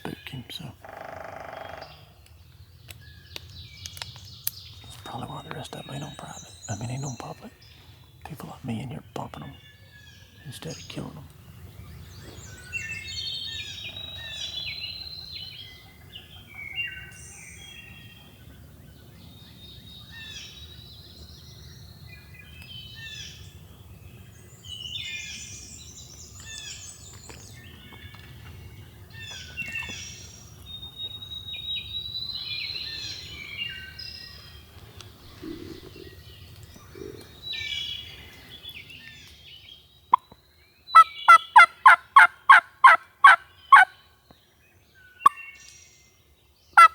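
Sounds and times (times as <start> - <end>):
songbirds singing: 0.0 - 46.9
turkey yelps: 41.0 - 43.9.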